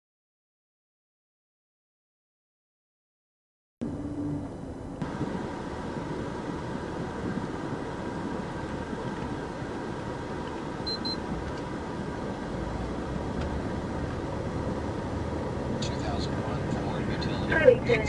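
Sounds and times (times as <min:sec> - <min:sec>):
steady vehicle noise: 0:03.8 - 0:18.0
high double beep: 0:10.8 - 0:11.2.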